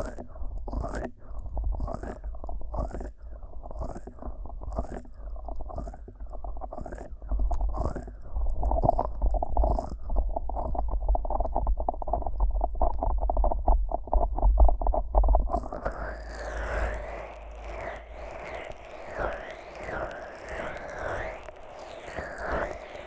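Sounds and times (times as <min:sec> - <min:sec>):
low rumble: 0:15.5 - 0:23.0.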